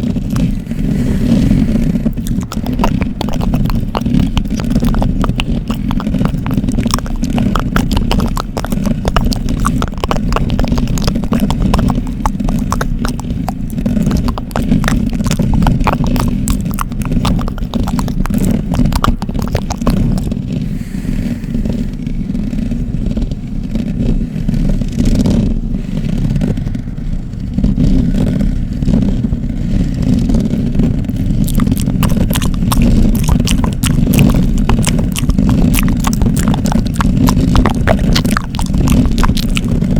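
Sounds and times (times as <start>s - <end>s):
scratching on microphone: 0.0s - 26.8s, 27.5s - 39.9s
deep muffled rumble: 0.0s - 39.9s
crackling clicks: 2.0s - 20.3s, 31.0s - 39.9s.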